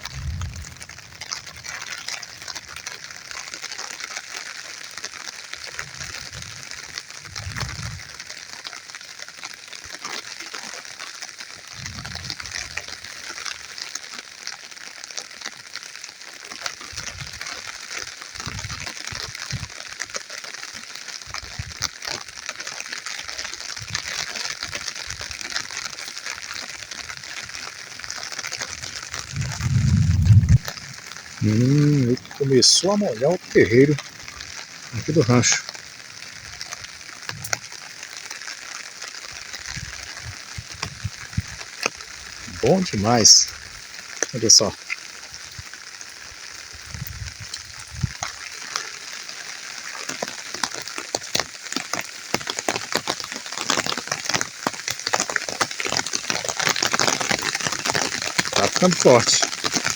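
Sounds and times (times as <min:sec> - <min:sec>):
light rain on plants: 0:00.0 - 0:59.9
low thumps: 0:29.2 - 0:31.0.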